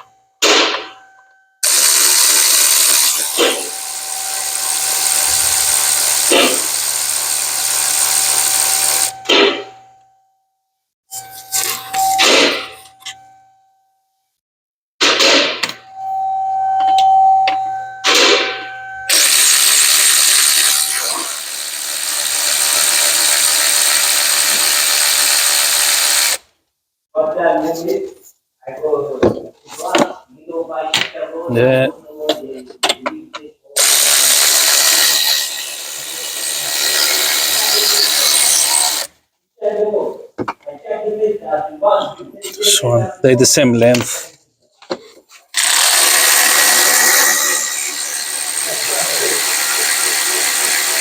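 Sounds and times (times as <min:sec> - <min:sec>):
electric ratchet running: 0:01.6 - 0:09.2, 0:19.1 - 0:26.4, 0:33.8 - 0:39.1, 0:45.6 - 0:51.0.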